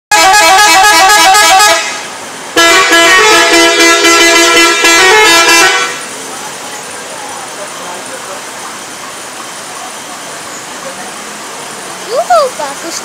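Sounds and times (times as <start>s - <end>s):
multi-tone musical air horns: 0.1s - 6.1s.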